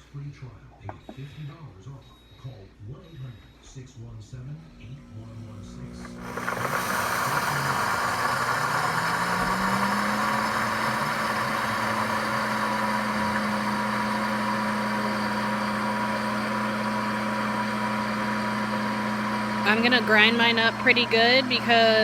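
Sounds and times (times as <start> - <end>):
blender motor hum: 4.7 - 22.0
coffee beans grinding: 4.8 - 22.0.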